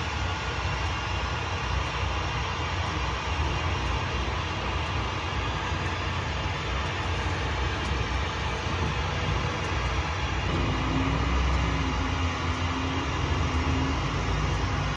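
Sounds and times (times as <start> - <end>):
low drone: 0.0 - 14.9
vehicle road noise: 6.6 - 14.9.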